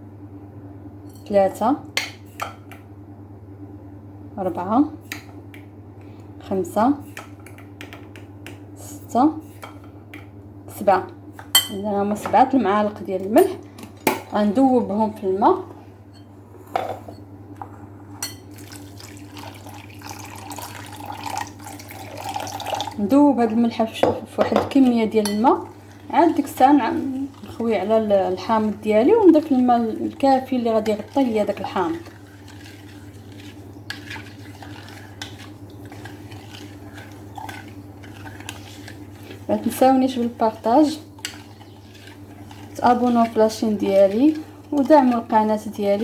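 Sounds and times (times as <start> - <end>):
steady low hum: 0.0 - 46.0
spoon clinking against bowl: 11.6 - 11.8, 24.6 - 25.4
water running into a bowl: 18.5 - 23.6, 24.8 - 46.0.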